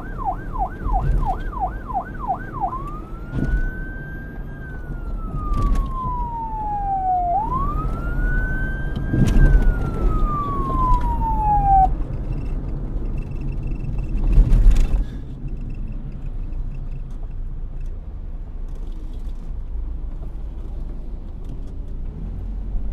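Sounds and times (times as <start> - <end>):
police siren wailing: 0.0 - 12.4
passing vehicle whoosh: 0.0 - 16.2
low road rumble: 0.0 - 22.9.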